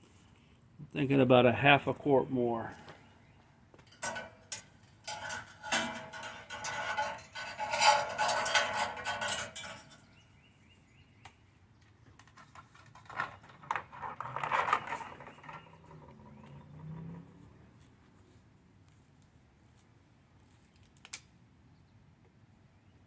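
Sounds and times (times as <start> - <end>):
hard objects clinking and clattering: 12.2 - 17.0.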